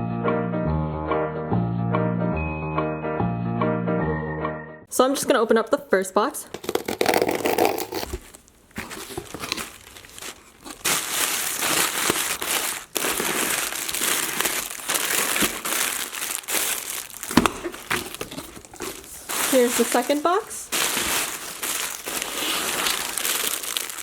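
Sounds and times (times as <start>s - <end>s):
packaging crinkling and rustling: 6.5s - 24.0s.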